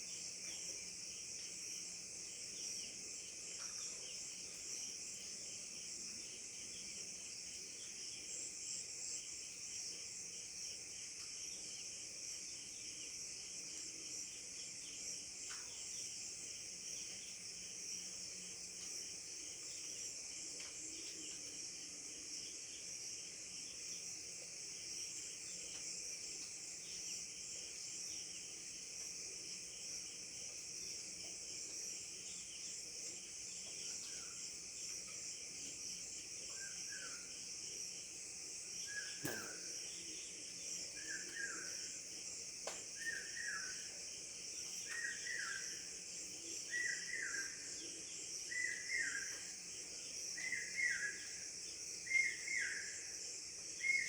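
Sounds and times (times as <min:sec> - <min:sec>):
high-pitched insect chorus: 0:00.0 - 0:54.0
sharp click: 0:39.2 - 0:39.7.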